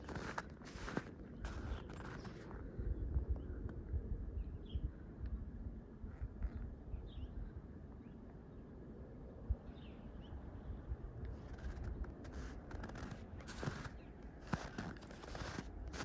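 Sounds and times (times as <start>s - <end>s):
footsteps crunching in snow: 0.0s - 2.5s, 11.4s - 16.0s.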